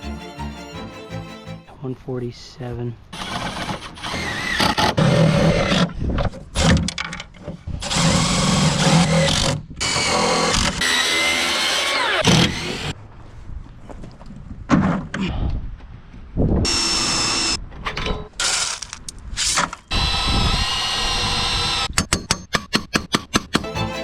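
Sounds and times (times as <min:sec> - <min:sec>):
power tool motor running: 0:19.9 - 0:21.9.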